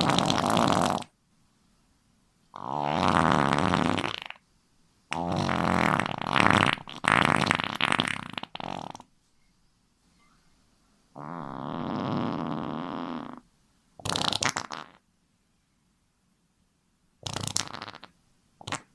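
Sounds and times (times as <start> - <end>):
farts: 0.0 - 1.1, 2.6 - 4.4, 5.1 - 9.1, 11.2 - 13.4, 14.0 - 15.0, 17.2 - 18.9.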